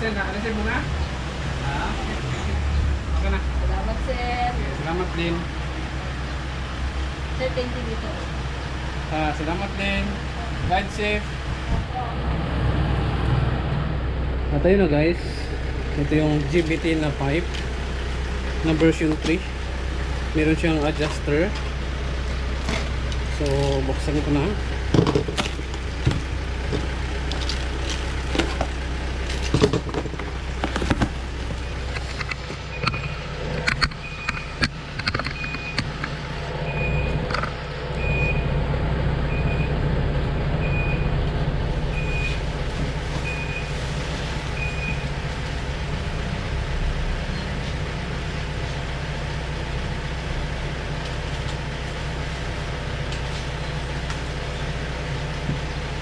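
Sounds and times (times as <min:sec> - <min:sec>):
engine droning: 0:00.0 - 0:56.0
package being opened and handled: 0:25.0 - 0:32.6.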